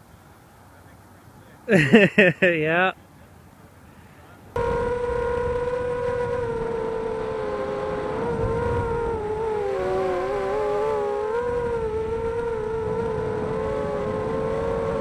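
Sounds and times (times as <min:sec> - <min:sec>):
drone motors whining: 0:04.6 - 0:15.0.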